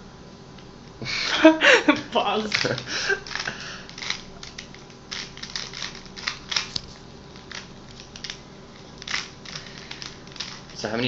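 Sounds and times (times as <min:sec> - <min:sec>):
puzzle cube plastic clicks: 0:02.5 - 0:08.4, 0:09.0 - 0:10.8.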